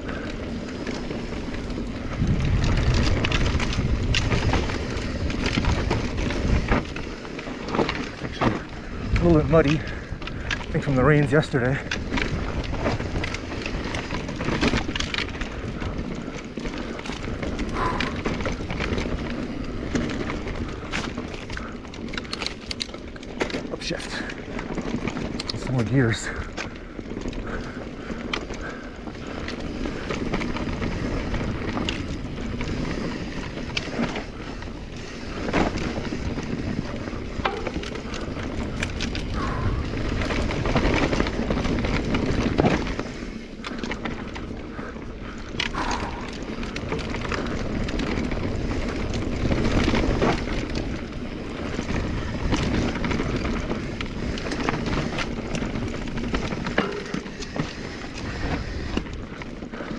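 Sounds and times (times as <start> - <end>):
bicycle tyres on dirt: 0.0 - 59.9
bike rattling over bumps: 0.0 - 59.9
wind on microphone: 1.3 - 7.2, 34.3 - 43.4.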